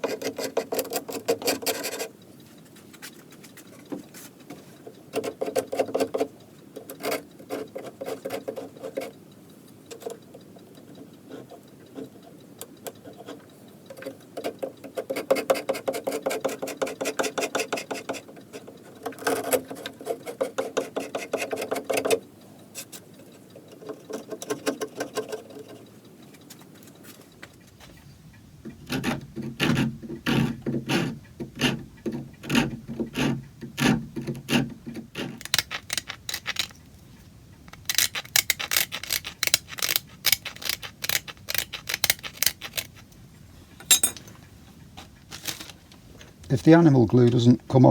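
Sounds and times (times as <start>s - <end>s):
hand tool rasping on wood: 0.0s - 2.1s, 14.5s - 22.2s, 28.8s - 36.7s, 37.8s - 43.0s.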